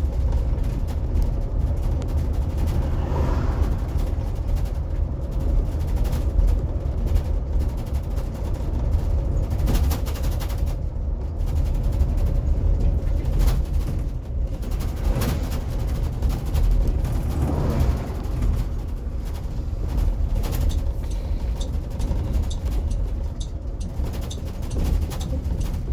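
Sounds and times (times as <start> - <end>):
bus body rattling and knocking: 0.0 - 25.9
low road rumble: 0.0 - 25.9.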